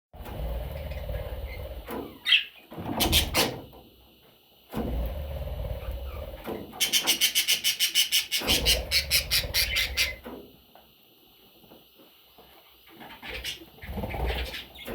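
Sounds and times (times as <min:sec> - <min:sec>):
chicks cheeping: 0:05.9 - 0:10.3.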